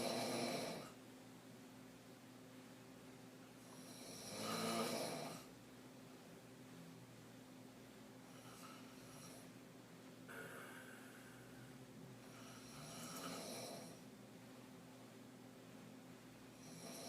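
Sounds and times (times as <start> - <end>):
woman snoring faintly: 0.0 - 1.0, 3.7 - 5.5, 10.3 - 14.0.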